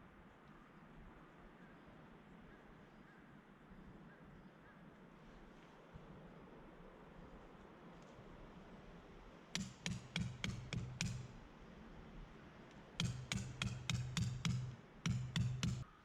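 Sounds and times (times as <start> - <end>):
hammer driving pegs into ground: 9.6 - 11.4, 13.0 - 15.9.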